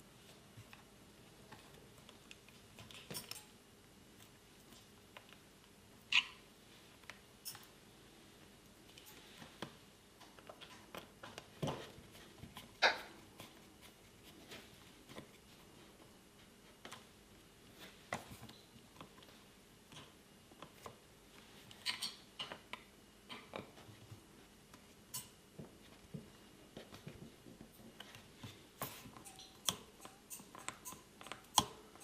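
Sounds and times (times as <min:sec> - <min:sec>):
small clicks and taps: 0:24.7 - 0:32.0.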